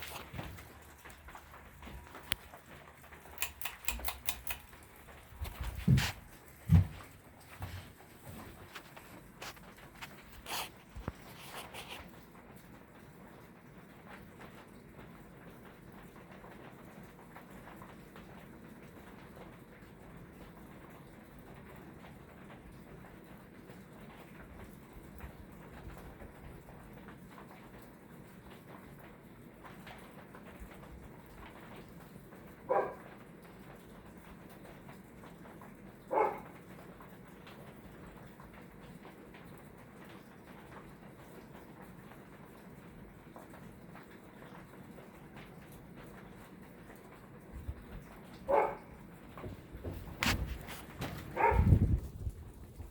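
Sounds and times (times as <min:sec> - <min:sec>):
ceiling fan motor humming: 0:00.0 - 0:19.4
ceiling fan motor hum: 0:00.0 - 0:52.9
faint ticking of fan: 0:00.8 - 0:05.6
dog barking: 0:32.7 - 0:33.1, 0:36.1 - 0:36.6, 0:48.4 - 0:49.0, 0:51.2 - 0:51.8.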